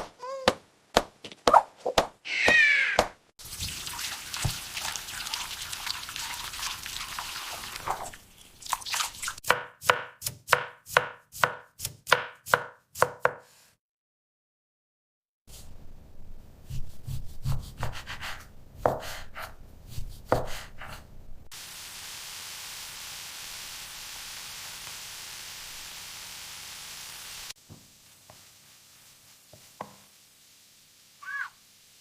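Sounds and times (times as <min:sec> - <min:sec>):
cat meow: 0:02.3 - 0:03.0, 0:31.2 - 0:31.6
steady hiss: 0:21.5 - 0:32.0.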